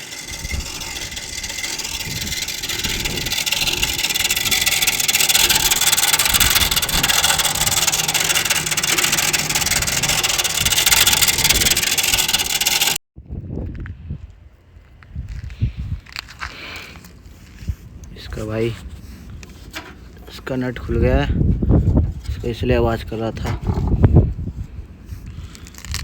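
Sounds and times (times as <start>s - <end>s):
air conditioner rattling: 0.0s - 13.0s.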